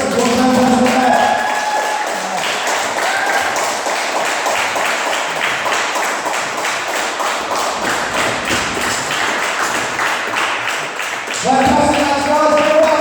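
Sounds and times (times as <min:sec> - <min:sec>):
crowd clapping: 0:00.0 - 0:13.0.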